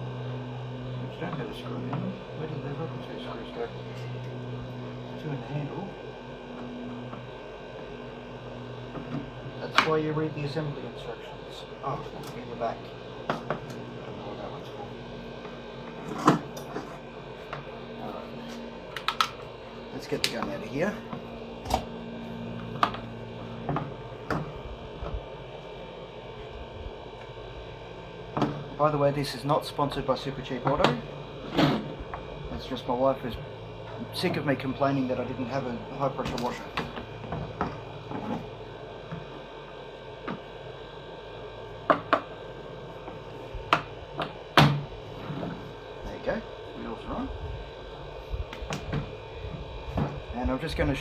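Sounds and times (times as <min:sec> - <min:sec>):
low steady hum: 0:00.0 - 0:51.0.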